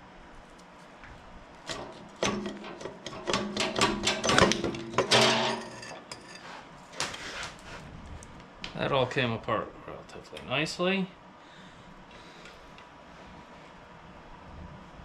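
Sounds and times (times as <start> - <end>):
metal parts clinking and rattling: 1.7 - 6.3.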